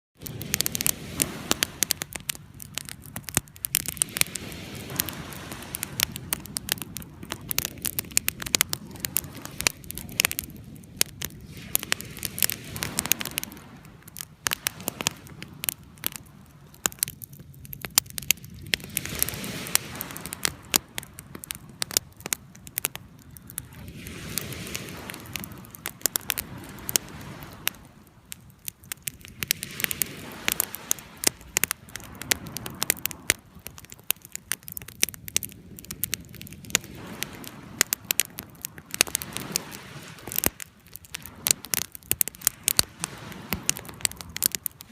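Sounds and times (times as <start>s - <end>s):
bonfire crackling and popping: 0.2s - 44.9s.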